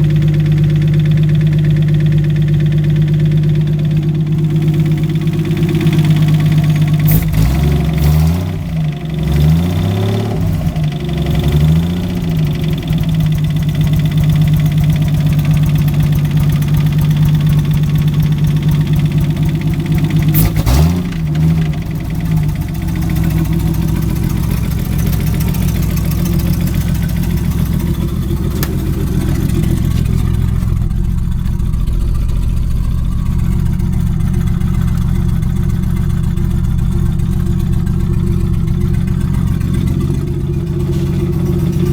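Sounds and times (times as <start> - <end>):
engine revving: 4.2 - 17.4, 18.2 - 41.9
car engine with rod knock: 23.0 - 30.9, 38.8 - 41.9.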